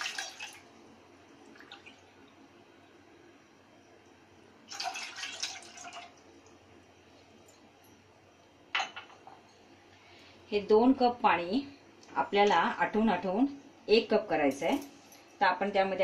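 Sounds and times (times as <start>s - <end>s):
water pouring into pot: 0.0s - 0.7s, 4.7s - 6.3s.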